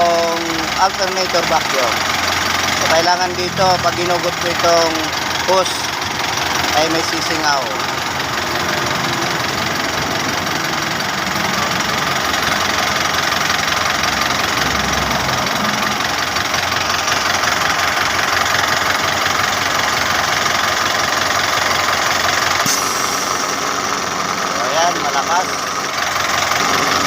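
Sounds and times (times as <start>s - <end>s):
engine idling: 0.0s - 27.0s
air suction hiss: 22.7s - 23.6s.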